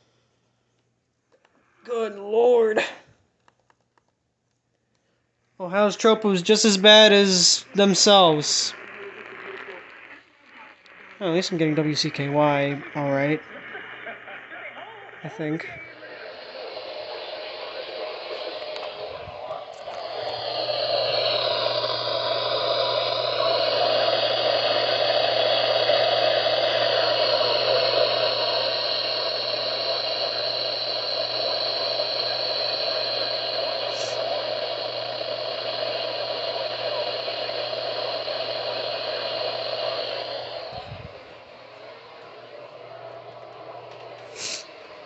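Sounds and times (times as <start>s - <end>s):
radio static hiss: 6.4s - 45.0s
whistling interference tones: 6.9s - 45.0s
low hum: 15.2s - 45.0s.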